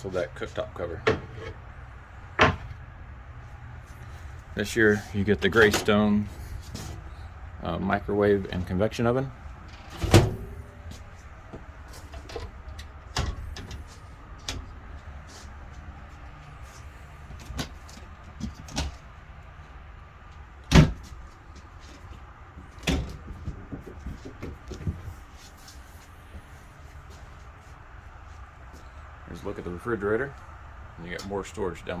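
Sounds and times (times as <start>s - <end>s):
door banging: 2.3s - 2.8s, 9.8s - 11.0s
cabinet doors clicking and knocking: 2.4s - 2.7s.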